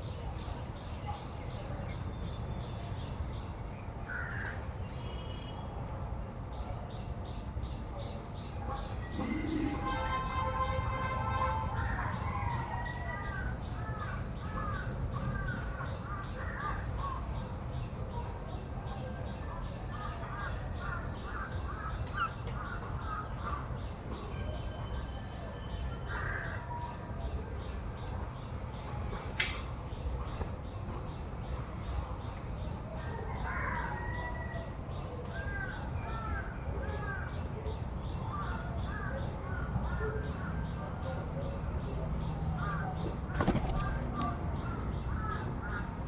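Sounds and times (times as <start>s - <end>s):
crows cawing: 4.1s - 4.6s, 20.3s - 23.6s
sharp click: 29.4s - 29.8s.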